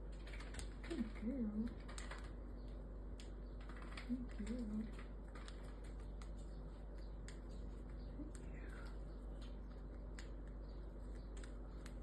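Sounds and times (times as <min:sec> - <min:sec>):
bird beak cracking seeds: 0:03.2 - 0:12.0.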